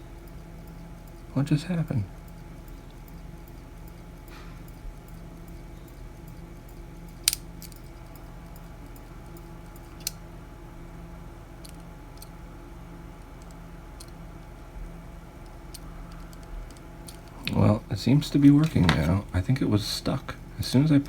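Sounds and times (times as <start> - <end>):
clock movement hum: 0.0 - 21.0
clock ticking: 0.1 - 6.8.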